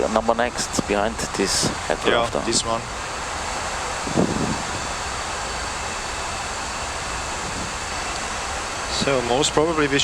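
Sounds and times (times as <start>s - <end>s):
air-conditioning hiss: 0.0s - 10.0s
airflow around cockpit: 0.0s - 10.0s.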